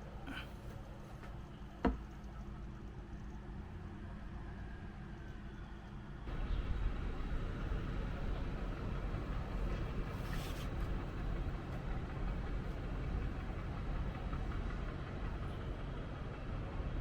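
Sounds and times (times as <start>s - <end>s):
air conditioner unit rumbling: 6.3s - 15.9s.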